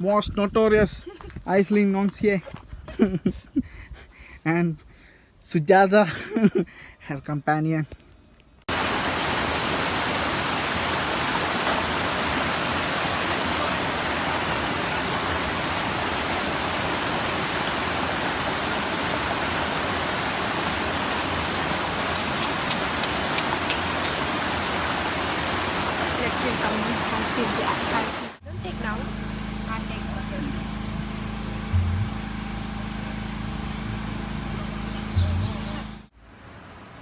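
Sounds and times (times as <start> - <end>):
water rushing: 8.7 - 35.1.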